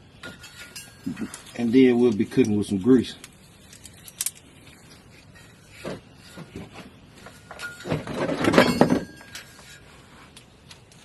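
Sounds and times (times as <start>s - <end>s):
metallic rings: 0.0s - 10.1s
tools clinking and scraping metal: 0.2s - 11.0s.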